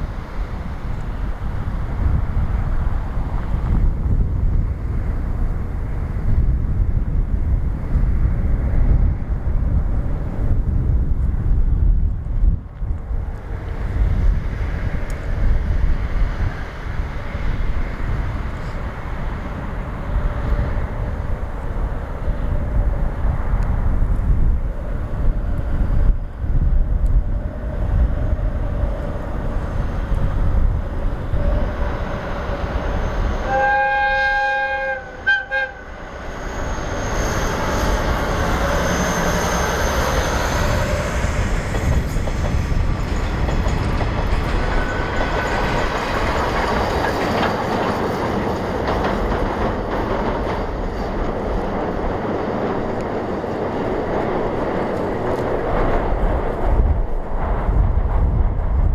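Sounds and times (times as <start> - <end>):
train running on rails: 0.0 - 58.9
wind rumble on microphone: 0.0 - 58.9
steam whistle: 33.1 - 40.7
wheel squeal: 35.8 - 48.7.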